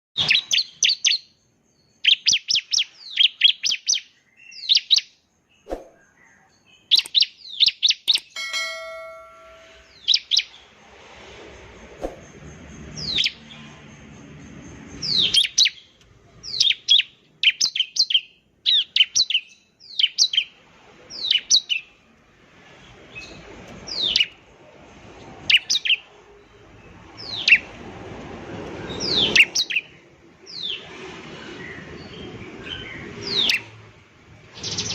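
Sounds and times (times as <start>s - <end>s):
bird singing high sharp notes: 8.1s - 10.4s.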